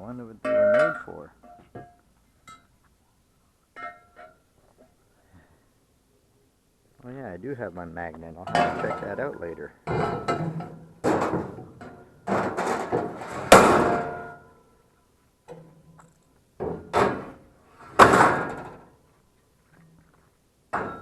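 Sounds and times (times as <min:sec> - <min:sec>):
hard objects knocking and thudding: 0:09.8 - 0:14.3, 0:16.6 - 0:17.4, 0:18.0 - 0:18.9.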